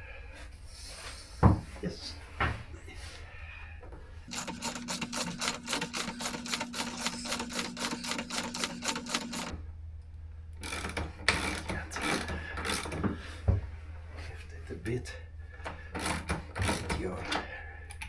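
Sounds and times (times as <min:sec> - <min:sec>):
ratchet wrench clicking: 0:04.3 - 0:09.5, 0:10.6 - 0:12.9, 0:16.0 - 0:17.0.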